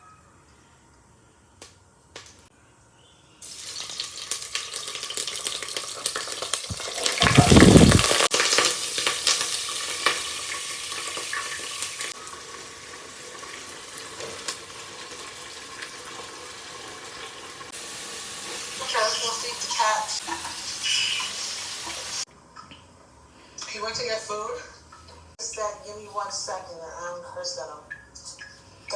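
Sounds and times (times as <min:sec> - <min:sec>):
food sizzling in a frying pan: 0:03.4 - 0:22.3.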